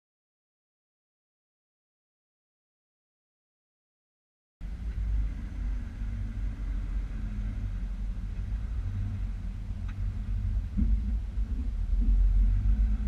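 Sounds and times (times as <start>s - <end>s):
engine low rumble: 4.6s - 13.0s.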